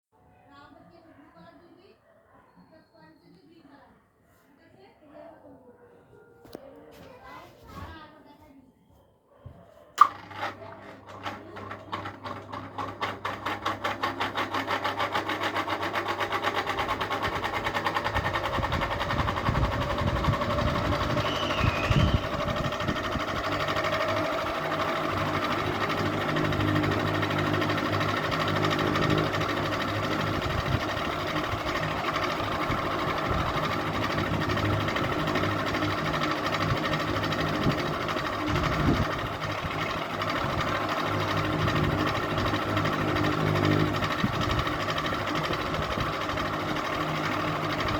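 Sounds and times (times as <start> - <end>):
ceiling fan whirring: 10.0 - 47.9.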